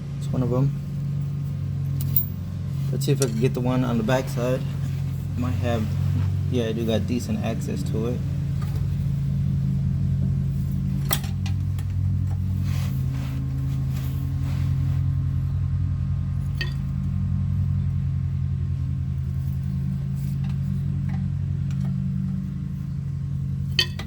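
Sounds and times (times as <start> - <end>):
steady low hum: 0.0 - 24.0
metal tool clinking on bolts: 1.9 - 2.5, 23.7 - 24.0.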